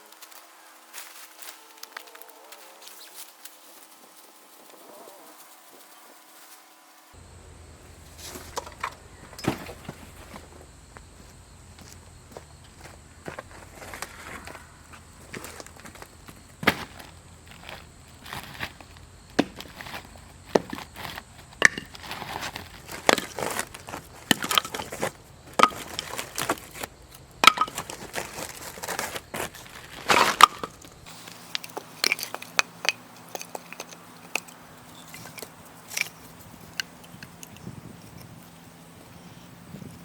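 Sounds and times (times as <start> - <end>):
dry firewood snapping: 19.4 - 38.3.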